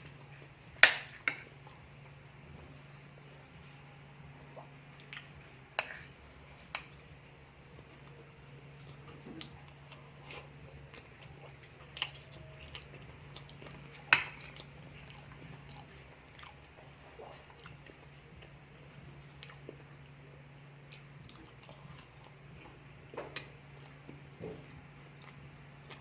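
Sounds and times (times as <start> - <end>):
steady low hum: 0.0 - 26.0
chewing and biting: 8.8 - 19.9.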